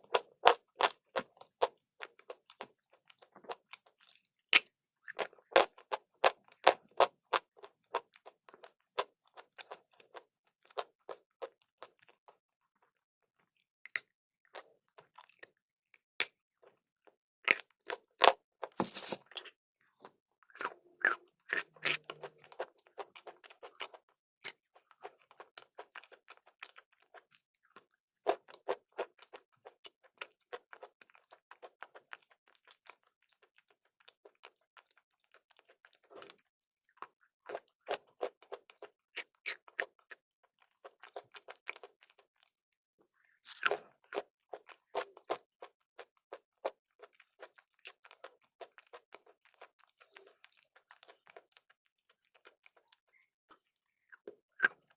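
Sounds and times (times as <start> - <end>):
chalk crunching being chewed: 16.2 - 42.6, 43.2 - 54.9.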